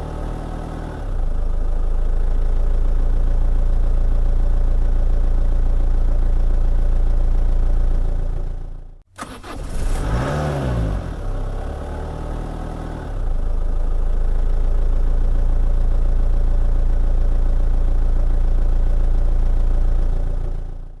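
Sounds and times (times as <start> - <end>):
car engine starting and revving: 9.1 - 13.6.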